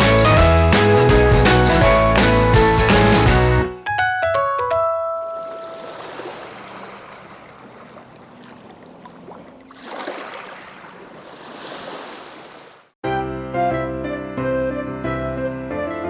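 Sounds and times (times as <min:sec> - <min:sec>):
piano music: 0:00.0 - 0:06.4, 0:13.0 - 0:16.0
waves washing in: 0:05.4 - 0:12.9.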